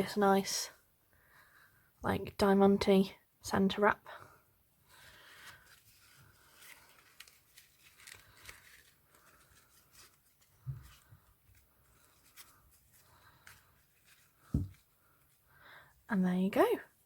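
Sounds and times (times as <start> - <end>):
faint rustling: 4.9 - 15.5
soft thump: 14.5 - 14.8.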